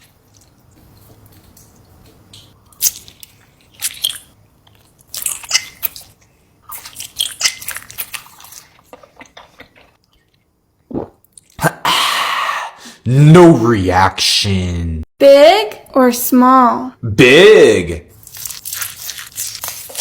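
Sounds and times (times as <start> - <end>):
person biting and chewing lemon: 2.2 - 11.6, 18.2 - 20.0.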